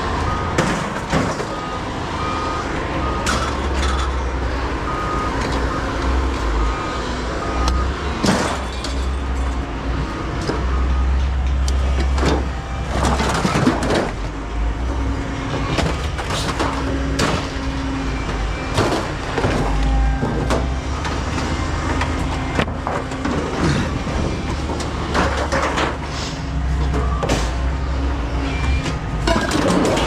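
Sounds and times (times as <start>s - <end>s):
scrap metal clanking and scraping: 11.2s - 14.3s, 15.5s - 17.7s, 18.6s - 27.7s, 28.6s - 30.0s.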